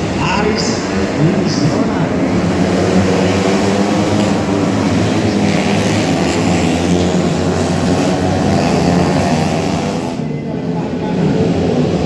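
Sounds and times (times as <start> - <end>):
motorcycle engines droning: 0.0 - 12.0.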